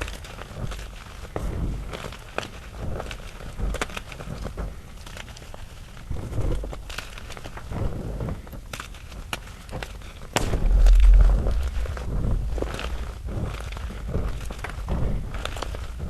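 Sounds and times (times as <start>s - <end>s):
deep thud: 10.4s - 14.4s.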